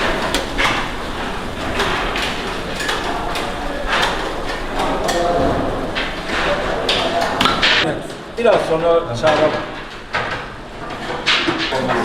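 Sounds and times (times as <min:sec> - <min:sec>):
steady noisy background: 0:00.0 - 0:12.0
faint voices: 0:02.0 - 0:08.3.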